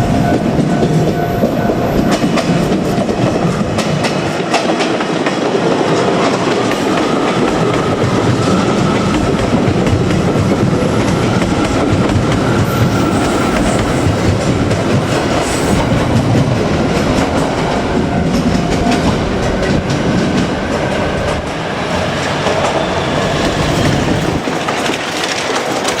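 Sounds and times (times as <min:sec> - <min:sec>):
electric train passing: 0:00.0 - 0:25.9
wheels clicking over rail joints: 0:16.1 - 0:26.0.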